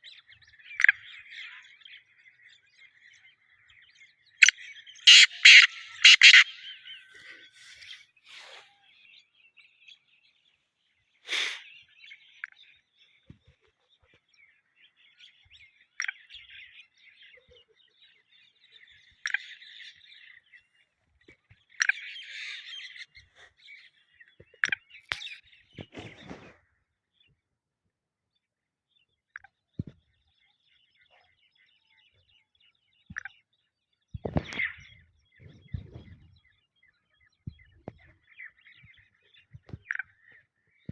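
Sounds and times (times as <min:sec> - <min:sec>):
bird chirping: 0:00.0 - 0:27.4, 0:28.3 - 0:40.9
loud sharp bird notes: 0:04.4 - 0:08.6.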